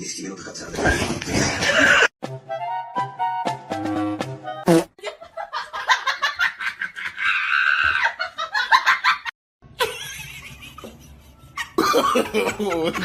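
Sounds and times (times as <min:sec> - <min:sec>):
person laughing: 0:09.8 - 0:13.0.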